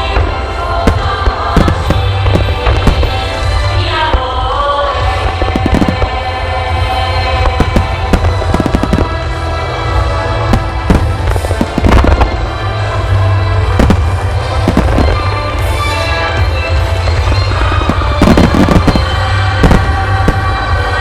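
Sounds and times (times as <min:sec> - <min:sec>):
aerial fireworks bursting: 0:00.0 - 0:21.0
music playing: 0:00.0 - 0:21.0.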